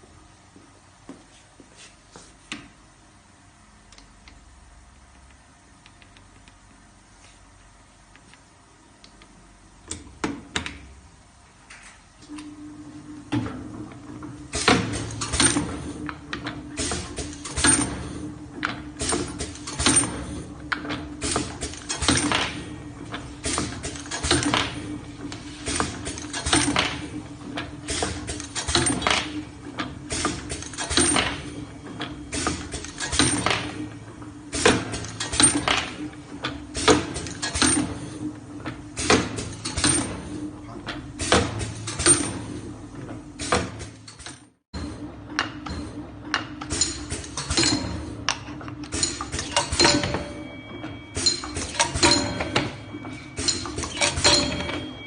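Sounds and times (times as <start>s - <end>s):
metallic clanks and clinks: 48.9s - 55.0s.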